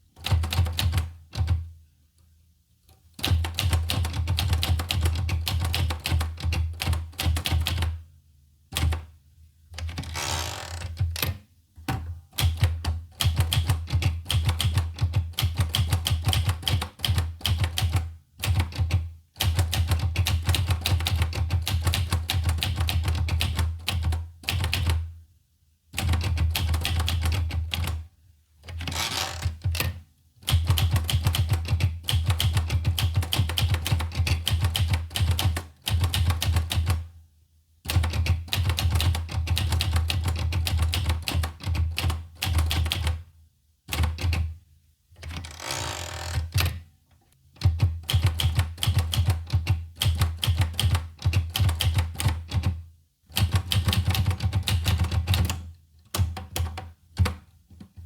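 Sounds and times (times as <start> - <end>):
typewriter keys clacking: 12.4 - 25.0, 26.0 - 28.0, 28.7 - 37.0, 37.9 - 43.2, 47.6 - 57.4.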